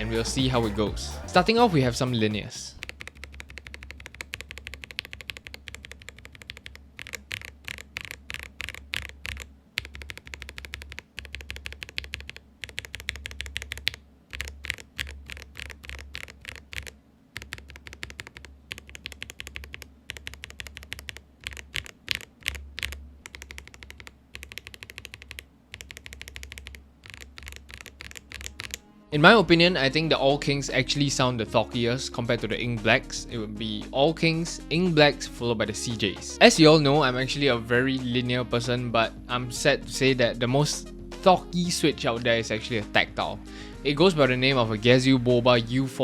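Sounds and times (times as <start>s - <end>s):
mechanical keyboard typing: 2.8s - 28.8s.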